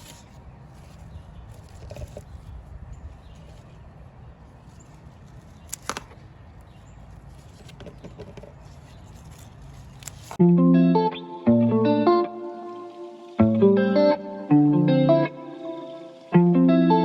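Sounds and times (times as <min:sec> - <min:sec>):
lettuce leaves being cut: 0:00.0 - 0:02.6, 0:04.5 - 0:10.4
guitar music: 0:10.4 - 0:17.0.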